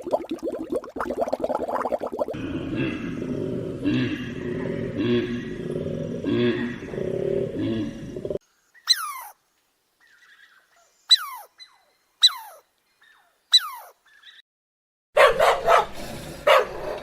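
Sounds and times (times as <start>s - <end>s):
dog barking: 15.2s - 17.0s.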